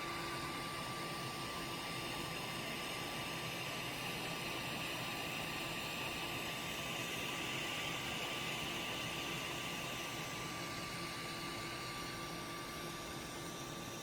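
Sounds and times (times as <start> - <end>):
printer fan noise: 0.0 - 14.0
thin constant whine: 0.0 - 14.0.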